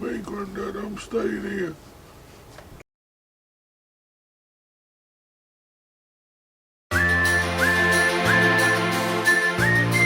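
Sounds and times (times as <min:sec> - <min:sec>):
faint background noise: 0:00.0 - 0:02.8.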